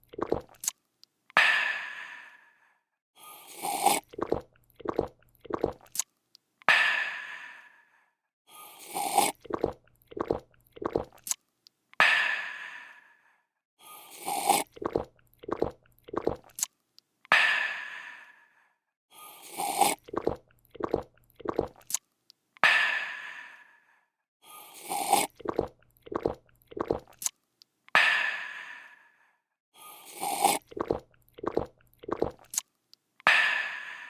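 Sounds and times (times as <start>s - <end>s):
person slurping and gulping: 0.0s - 0.8s, 3.2s - 6.1s, 8.6s - 11.4s, 13.9s - 16.7s, 19.2s - 22.0s, 24.5s - 27.3s, 29.8s - 32.7s.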